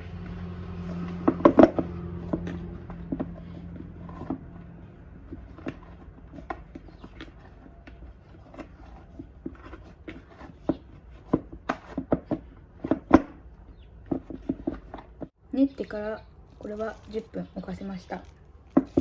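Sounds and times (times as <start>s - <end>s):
dough kneaded by hand in bowl: 0.0s - 15.4s.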